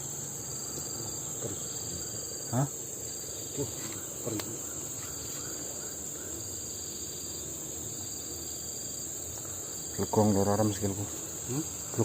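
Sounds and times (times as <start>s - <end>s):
crickets and night insects: 0.0s - 12.0s.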